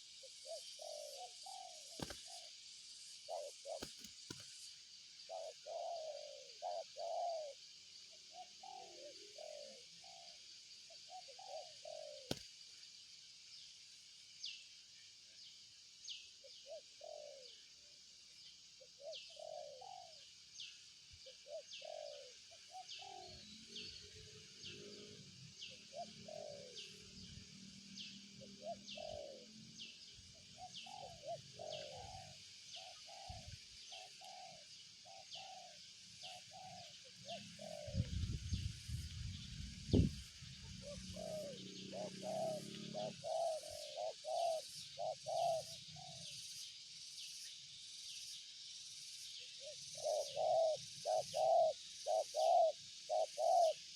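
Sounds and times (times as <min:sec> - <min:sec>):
dove cooing: 0:00.2 - 0:02.5, 0:03.2 - 0:04.4, 0:05.3 - 0:12.4, 0:16.4 - 0:17.6, 0:18.8 - 0:20.3, 0:21.2 - 0:27.2, 0:28.0 - 0:38.3, 0:39.9 - 0:46.3, 0:49.6 - 0:53.9.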